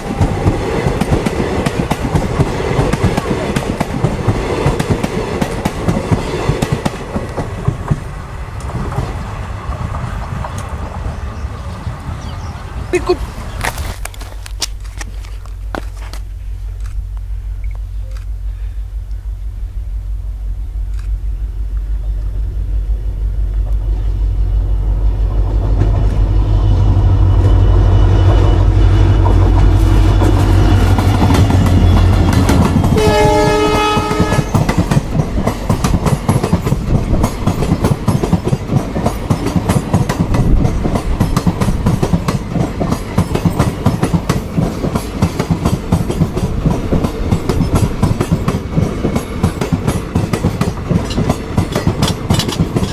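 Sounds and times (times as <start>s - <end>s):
diesel locomotive engine drone: 0.0s - 52.9s
train horn blast: 31.5s - 34.7s
wheel clatter over rail joints: 34.1s - 52.9s.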